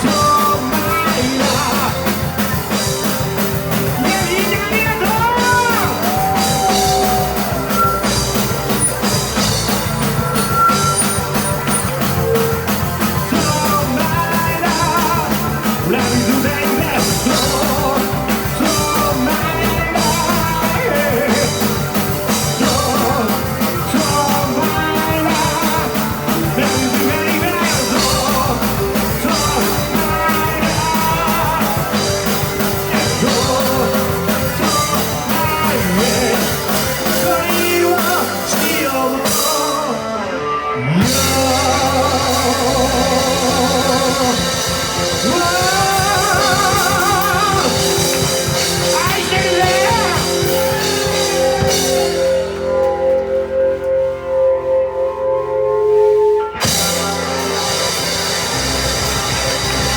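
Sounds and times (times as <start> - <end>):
drum kit: 0.0 - 53.5, 56.6 - 59.9
electric guitar: 0.0 - 55.2, 56.0 - 59.9
bass guitar: 0.0 - 59.9.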